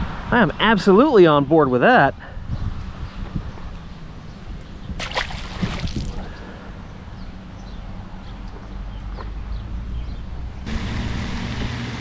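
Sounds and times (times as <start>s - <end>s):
water splashing and sloshing: 5.0s - 6.6s.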